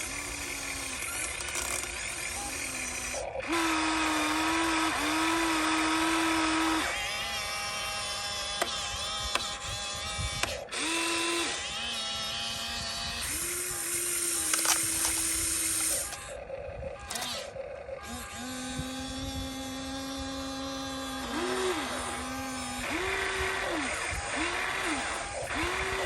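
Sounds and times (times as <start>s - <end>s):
small electric motors whining: 0.0s - 26.0s.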